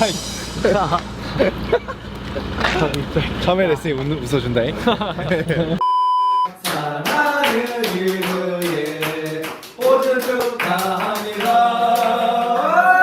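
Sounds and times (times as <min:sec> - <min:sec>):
electronic beep: 0:05.8 - 0:06.6
voices singing: 0:06.4 - 0:13.0
hand claps: 0:06.6 - 0:12.6.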